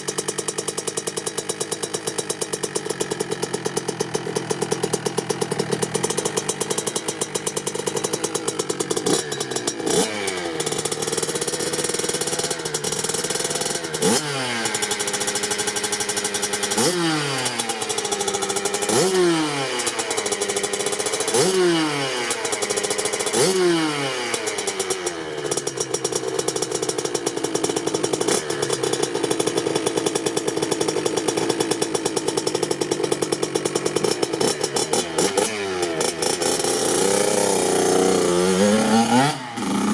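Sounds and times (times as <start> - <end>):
two-stroke engine idling and revving: 0.0 - 39.9.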